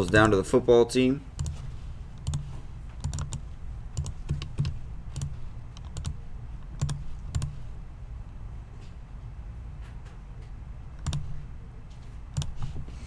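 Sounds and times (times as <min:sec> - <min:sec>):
keyboard keys clicking: 0:00.0 - 0:00.5, 0:01.4 - 0:07.6, 0:11.0 - 0:11.4, 0:12.4 - 0:12.8
low steady hum: 0:00.0 - 0:13.0.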